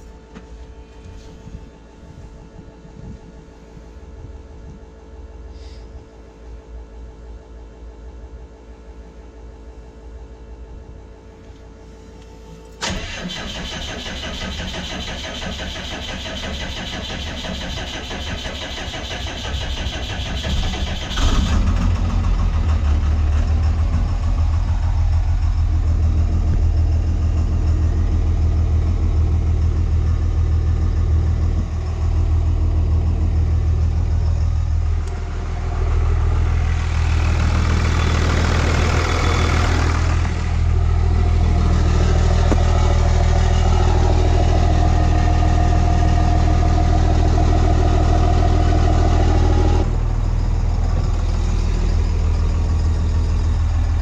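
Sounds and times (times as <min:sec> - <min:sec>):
diesel engine idling: 0:11.3 - 0:54.0
diesel engine cranking on starter: 0:12.7 - 0:54.0.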